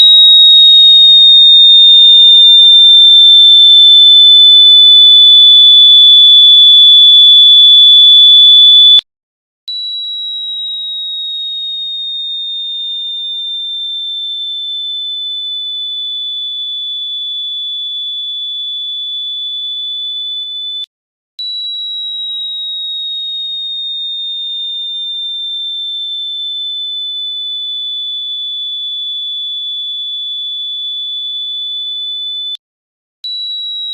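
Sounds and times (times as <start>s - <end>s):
shrill electronic tone: 0.0s - 9.0s.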